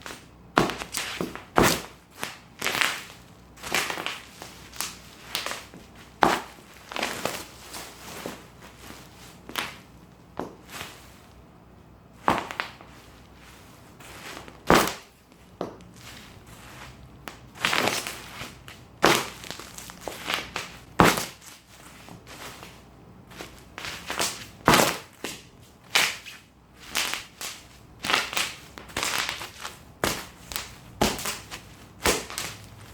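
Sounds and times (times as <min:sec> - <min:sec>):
bubble wrap popping: 0:00.0 - 0:11.1, 0:12.2 - 0:32.9
plastic crinkling: 0:00.0 - 0:11.4, 0:12.2 - 0:32.9.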